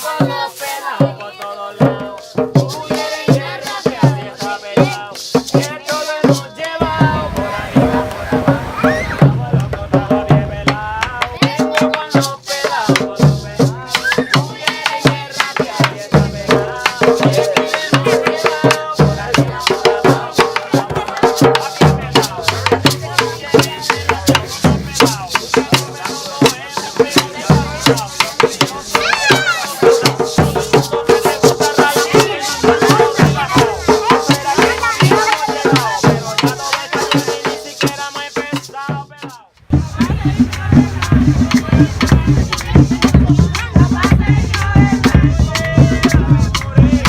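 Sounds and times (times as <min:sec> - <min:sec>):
hand drums: 0:00.0 - 0:47.0
person singing: 0:00.0 - 0:47.0
shaker rattling: 0:02.2 - 0:06.8, 0:11.4 - 0:47.0.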